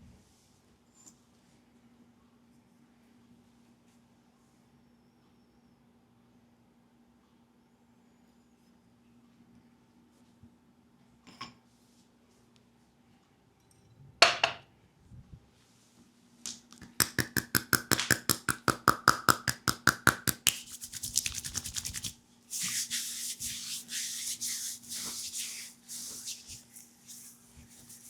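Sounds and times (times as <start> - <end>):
hissy rubbing on skin: 19.5 - 28.0.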